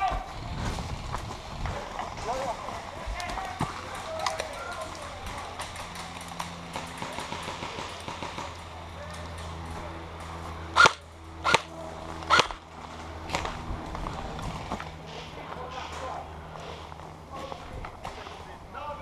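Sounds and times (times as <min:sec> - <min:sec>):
footsteps running: 0:00.0 - 0:08.5
airsoft gun shots: 0:10.8 - 0:11.7, 0:12.3 - 0:12.6.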